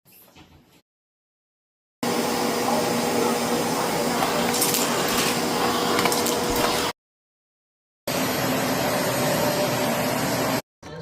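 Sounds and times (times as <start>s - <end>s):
vacuum cleaner running: 2.0s - 7.0s, 8.1s - 10.6s.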